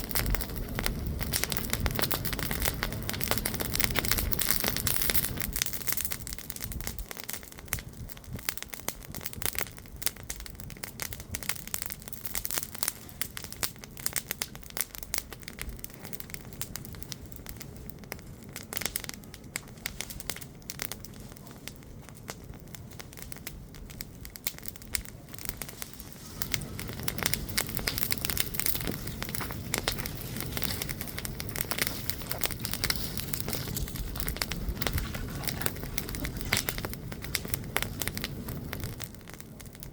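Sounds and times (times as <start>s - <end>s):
bonfire crackling and popping: 0.0s - 39.9s
steady low rush: 25.1s - 38.7s.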